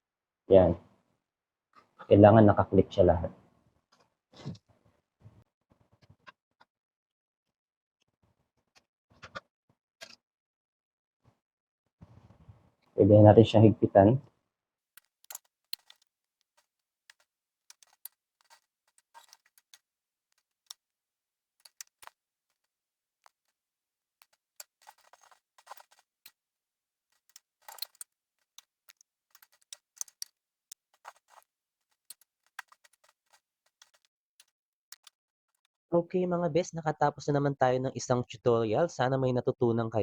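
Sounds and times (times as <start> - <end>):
screwdriver tightening screws: 15.0 - 16.0, 16.6 - 19.8, 21.6 - 22.6, 24.2 - 26.2, 27.2 - 35.1.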